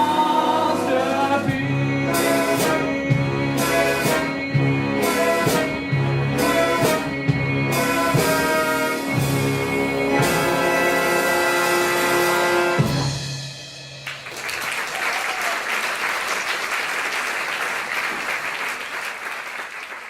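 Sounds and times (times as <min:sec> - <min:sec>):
band with brass playing: 0:00.0 - 0:13.7
audience applauding: 0:14.0 - 0:20.0.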